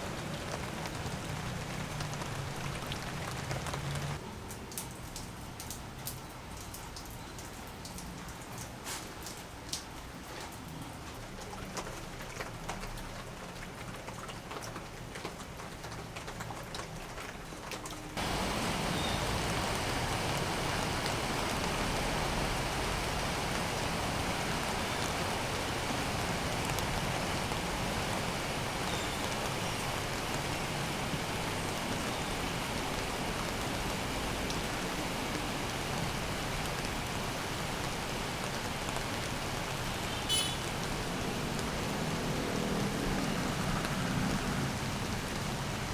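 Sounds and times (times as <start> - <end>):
steady rain falling: 0.0 - 45.9.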